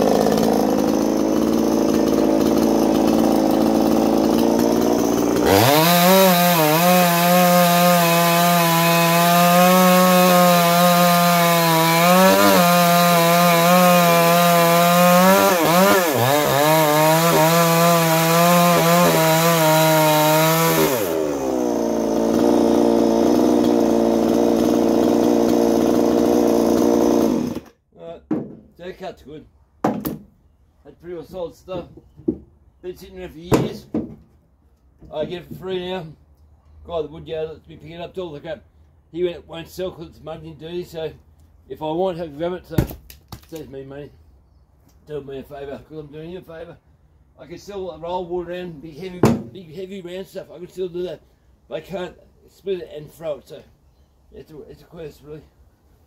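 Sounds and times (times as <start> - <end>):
chainsaw cutting a log: 0.0 - 27.7.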